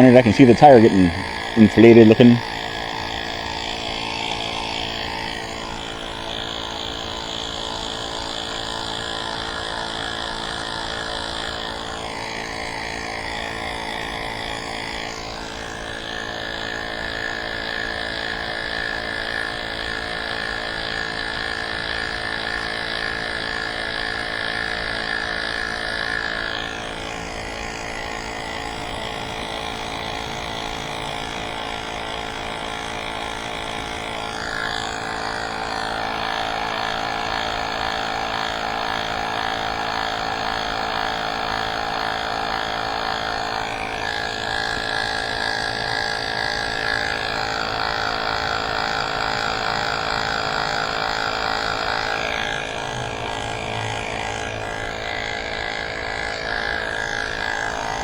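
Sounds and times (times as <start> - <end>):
electric tire pump running: 0.0 - 58.0.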